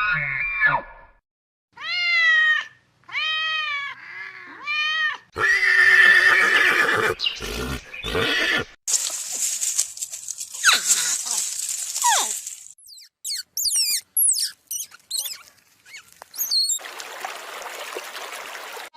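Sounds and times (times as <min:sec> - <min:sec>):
animal cries: 0:01.8 - 0:08.7
rough animal call: 0:05.4 - 0:08.8.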